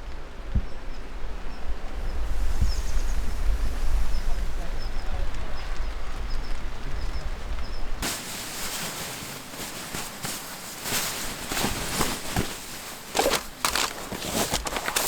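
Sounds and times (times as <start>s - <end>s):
rustling and scuffing: 8.0s - 15.0s.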